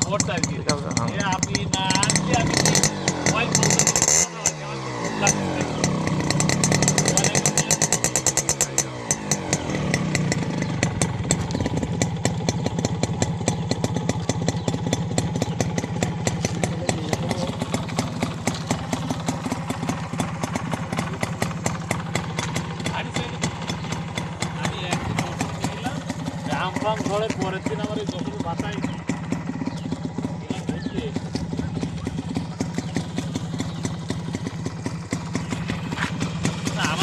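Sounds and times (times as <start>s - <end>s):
motorcycle engine revving and idling: 0.0s - 37.0s.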